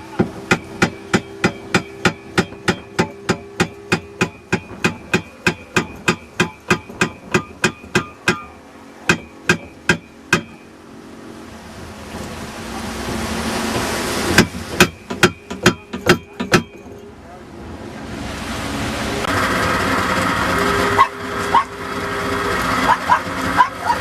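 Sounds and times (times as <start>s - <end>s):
knocking on boat hull: 0.1s - 10.6s, 13.8s - 16.8s.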